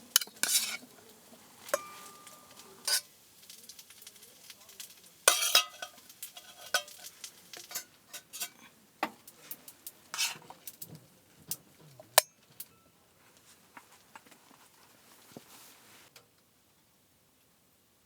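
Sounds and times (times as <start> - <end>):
metal utensils clinking on dishes: 0.1 - 3.1, 4.1 - 12.9.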